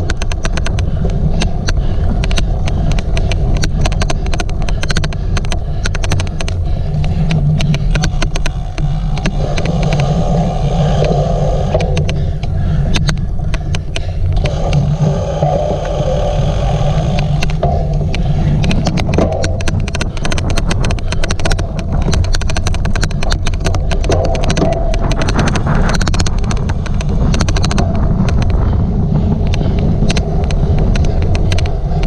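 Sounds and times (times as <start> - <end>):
bike riding over rough ground: 0.0 - 32.0
sharp irregular clicks: 0.0 - 32.0.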